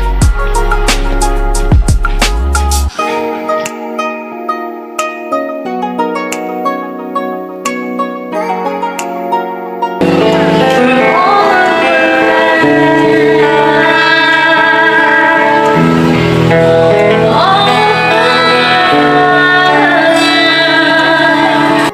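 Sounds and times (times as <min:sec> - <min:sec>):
plucked guitar: 0:00.0 - 0:21.9
woman singing: 0:10.2 - 0:21.9.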